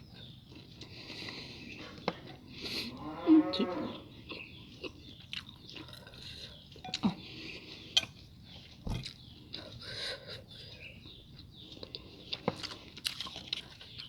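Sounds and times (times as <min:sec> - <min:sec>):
person chewing food: 0:04.2 - 0:09.8, 0:11.0 - 0:14.0.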